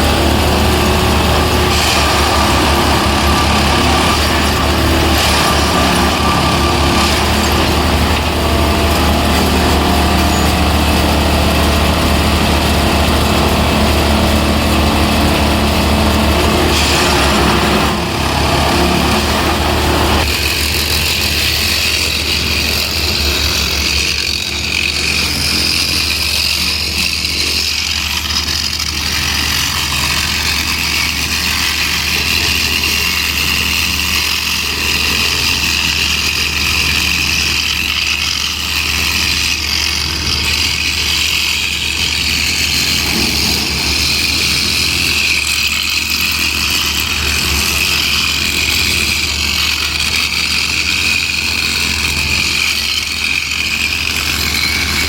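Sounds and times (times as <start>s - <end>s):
diesel engine hum: 0.0s - 55.0s
steady high whine: 38.4s - 47.8s.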